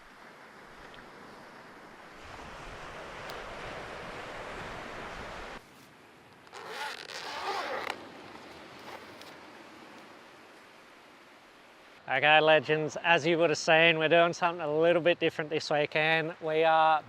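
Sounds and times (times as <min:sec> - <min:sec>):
surf washing on beach: 0:00.0 - 0:06.3
wind: 0:00.0 - 0:17.0.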